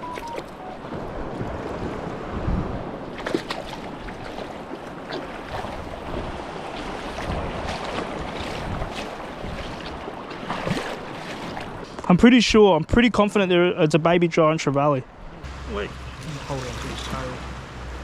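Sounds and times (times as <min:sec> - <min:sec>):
waves washing: 0:00.0 - 0:12.2, 0:15.1 - 0:18.0
wind noise on microphone: 0:00.2 - 0:04.5, 0:05.5 - 0:10.9.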